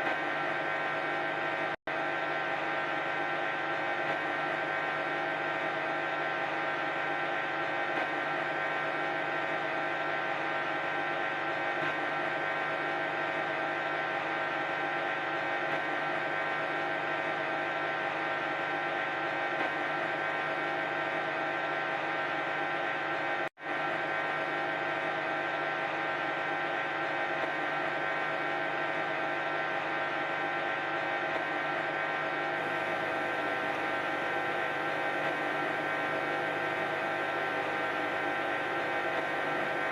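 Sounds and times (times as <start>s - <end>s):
washing machine spinning: 32.6s - 39.9s.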